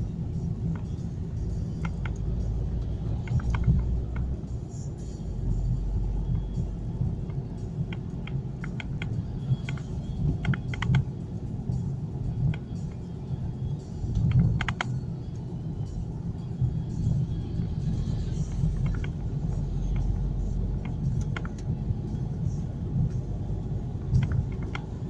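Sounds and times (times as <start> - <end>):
car engine and road noise: 0.0 - 25.0
clicks and light rattles: 24.1 - 24.9.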